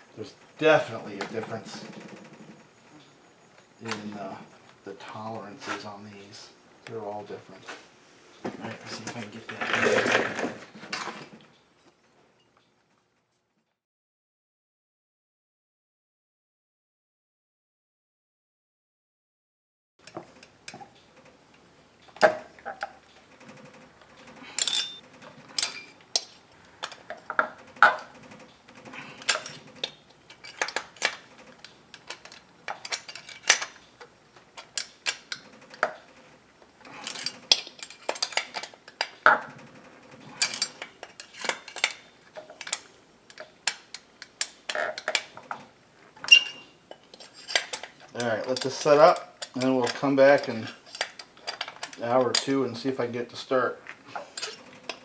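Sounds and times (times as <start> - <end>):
metal parts and tools clinking: 24.2 - 36.1, 36.8 - 45.6, 46.2 - 52.6, 54.1 - 55.0.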